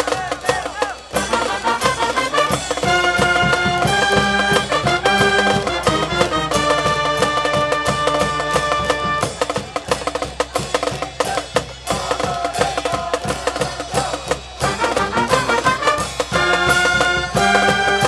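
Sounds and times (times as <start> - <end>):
drums and percussion: 0.0 - 18.0
brass chords: 1.1 - 9.6, 14.6 - 18.0.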